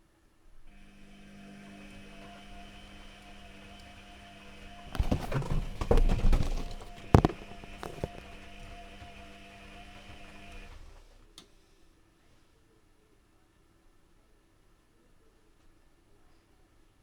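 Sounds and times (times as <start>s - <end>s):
washing machine humming: 0.6s - 11.2s
knocks and thuds: 4.9s - 9.2s.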